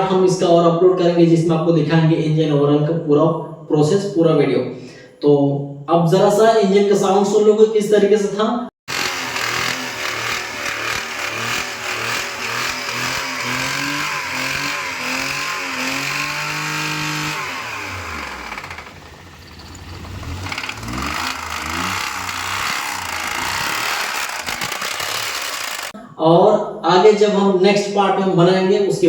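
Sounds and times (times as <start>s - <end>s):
car engine revving: 8.9s - 26.0s.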